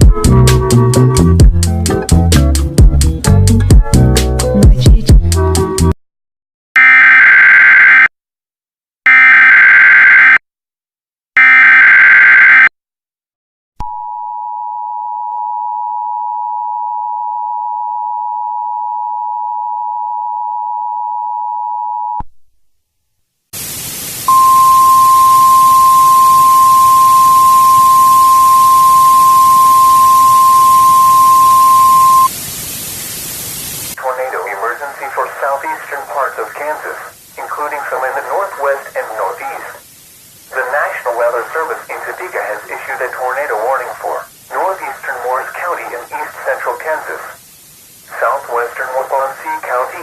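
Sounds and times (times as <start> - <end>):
loud static: 23.6 - 50.0
steady alarm tone: 24.3 - 32.3
two-tone attention signal: 24.3 - 32.3.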